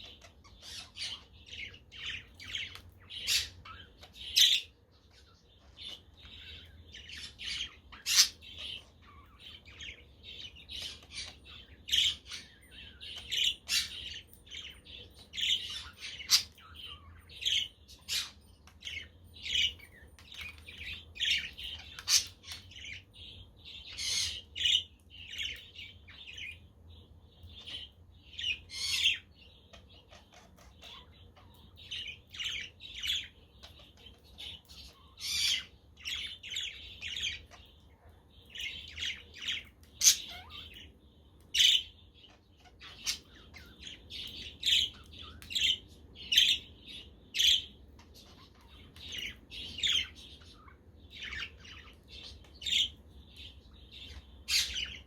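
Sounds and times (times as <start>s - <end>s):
budgerigars chirping and chattering: 0.0s - 55.0s.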